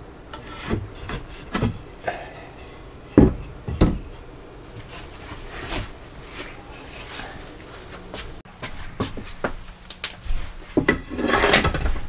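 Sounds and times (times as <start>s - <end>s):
wooden knocks and bumps: 3.2s - 4.2s.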